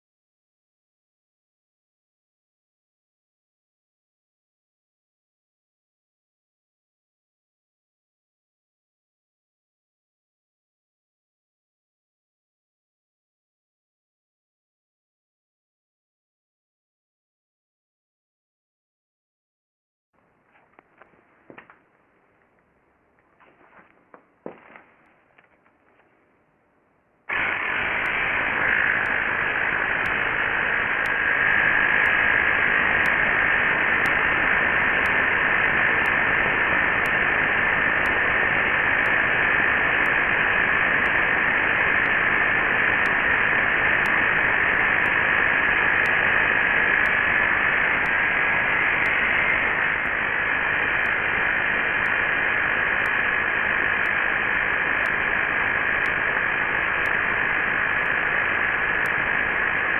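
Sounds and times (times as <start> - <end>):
high compressor whine: 22.8 - 59.9
air compressors rattling: 27.3 - 33.1.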